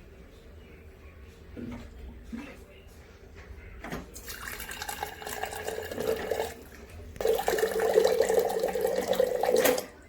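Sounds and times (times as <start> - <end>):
water pouring from a tap: 4.2 - 9.9.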